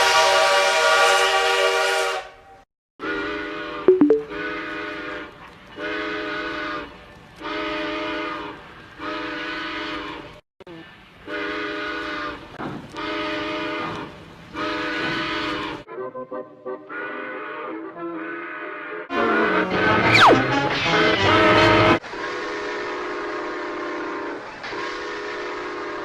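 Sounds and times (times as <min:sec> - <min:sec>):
train whistle blasts: 0:00.0 - 0:02.4, 0:05.7 - 0:10.2, 0:11.2 - 0:12.4, 0:13.0 - 0:14.0, 0:14.6 - 0:15.8.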